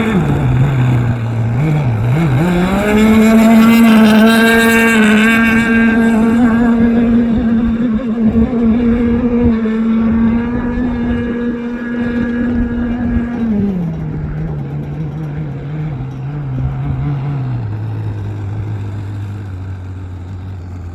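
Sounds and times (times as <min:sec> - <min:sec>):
model boat motor running: 0:00.0 - 0:20.9.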